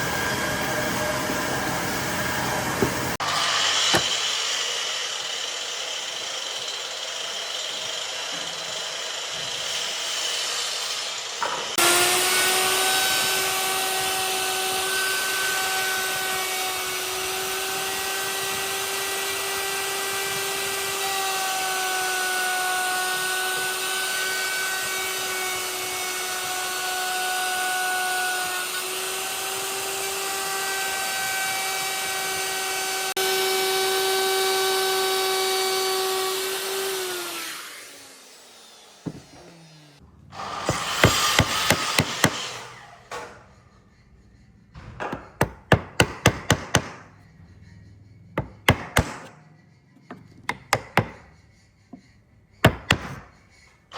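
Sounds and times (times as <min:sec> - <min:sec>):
electric power tool whining: 0:00.0 - 0:43.3.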